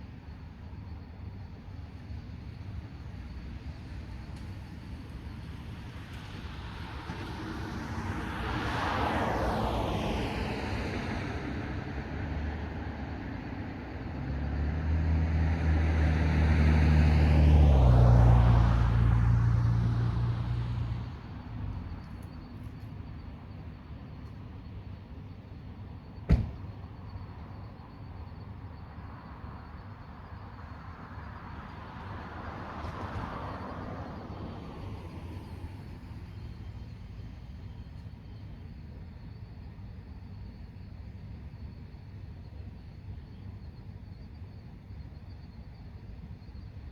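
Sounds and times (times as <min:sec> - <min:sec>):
cars driving past: 0:05.1 - 0:22.4, 0:29.2 - 0:37.5.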